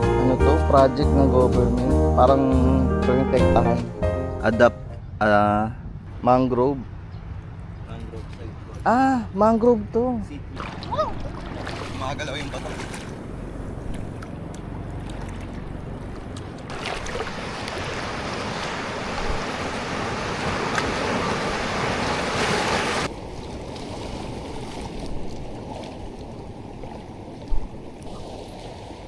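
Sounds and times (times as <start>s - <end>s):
sea surf on rocky shore: 14.4s - 29.0s.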